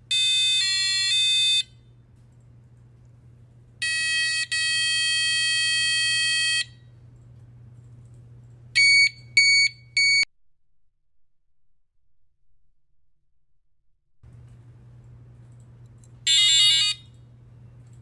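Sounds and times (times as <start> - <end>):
buzzer beeping: 0.1 - 1.8, 3.8 - 6.8, 8.8 - 10.3, 16.3 - 17.1.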